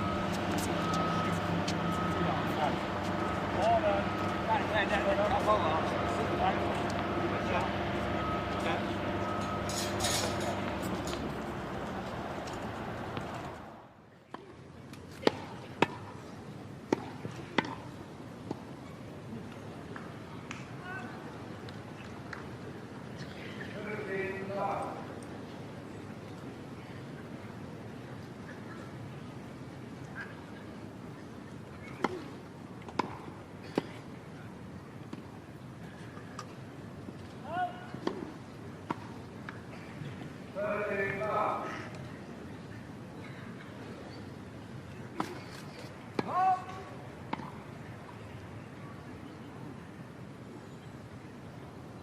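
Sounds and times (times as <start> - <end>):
steady background noise: 0.0 - 52.0
tennis ball hit and bouncing: 15.1 - 16.1, 16.9 - 17.9, 31.9 - 34.0, 38.0 - 39.6, 46.1 - 47.6.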